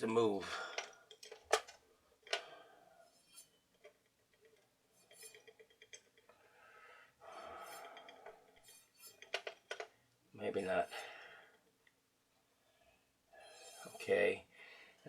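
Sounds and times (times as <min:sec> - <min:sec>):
mechanism clicks and metallic clinks: 0:00.7 - 0:02.4, 0:03.1 - 0:06.4, 0:07.5 - 0:10.0
soft rubbing: 0:03.0 - 0:03.8, 0:04.5 - 0:06.0, 0:07.2 - 0:09.6, 0:13.3 - 0:14.4.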